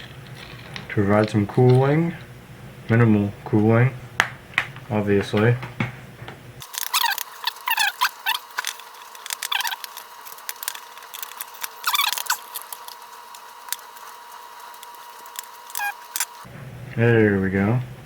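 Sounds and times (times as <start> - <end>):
metal and plastic parts rubbing: 6.6 - 16.5
parts squeaking: 6.6 - 16.5.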